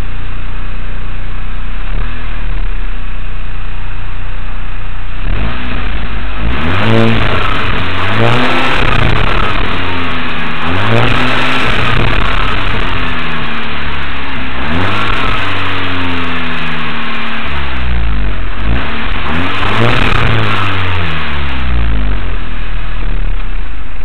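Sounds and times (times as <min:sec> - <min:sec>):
car engine revving: 0:05.1 - 0:23.9.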